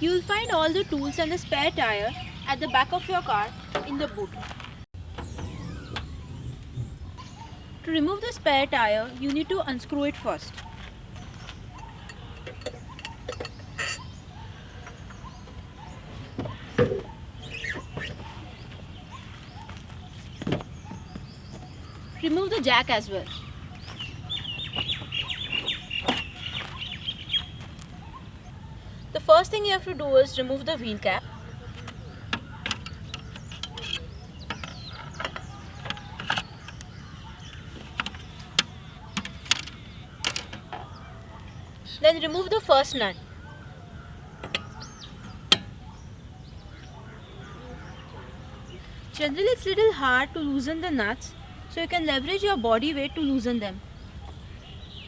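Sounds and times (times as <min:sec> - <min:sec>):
short squeaks: 0:05.0 - 0:07.2, 0:17.0 - 0:18.4.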